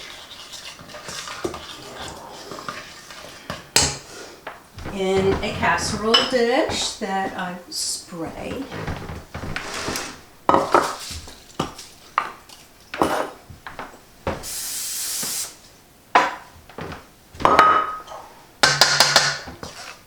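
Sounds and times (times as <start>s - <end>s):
dishes and utensils clinking: 4.8s - 7.0s, 10.5s - 13.4s, 17.4s - 19.8s
aerosol spray hiss: 14.4s - 15.6s.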